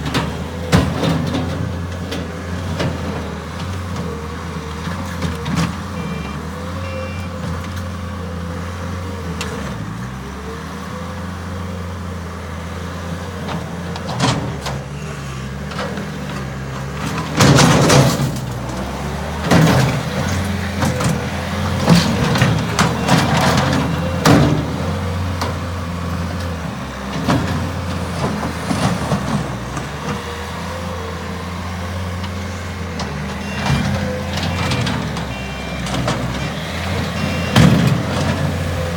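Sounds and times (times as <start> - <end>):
loud clanks and knocks: 0.0 - 4.1, 15.7 - 25.8, 37.1 - 38.7
diesel engine running: 0.0 - 38.9.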